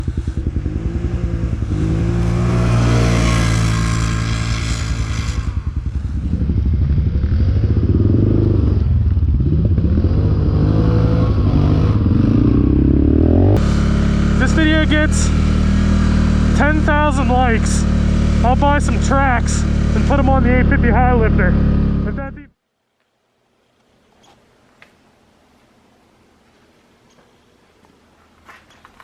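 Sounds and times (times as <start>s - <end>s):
atv engine revving: 0.0s - 22.5s.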